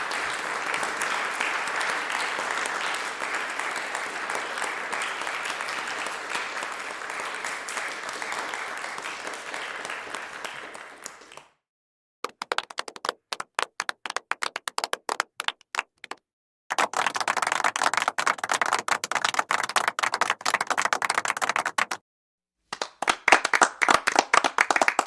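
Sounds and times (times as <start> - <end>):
people clapping: 0.0 - 11.6, 12.2 - 22.0, 22.7 - 25.0.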